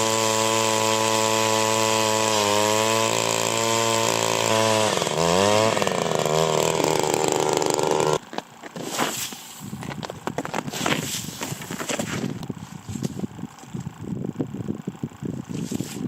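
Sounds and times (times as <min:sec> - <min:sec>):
power ice auger drilling: 0:00.0 - 0:09.4.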